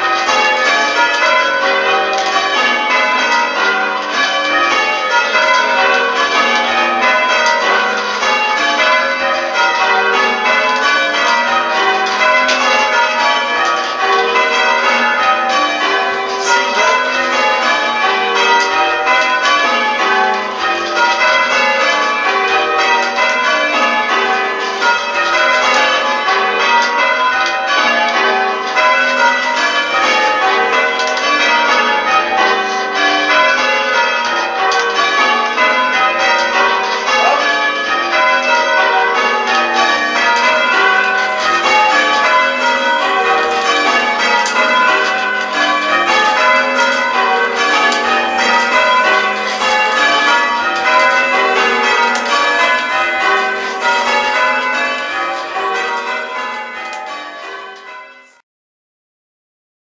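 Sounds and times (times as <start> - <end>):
church bells change ringing: 0.0 - 58.4.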